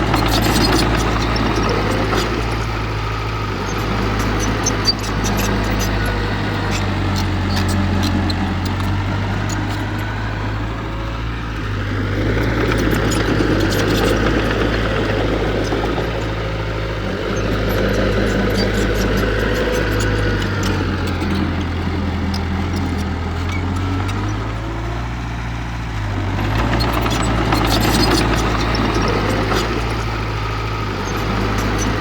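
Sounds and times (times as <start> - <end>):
diesel engine running: 0.0 - 32.0.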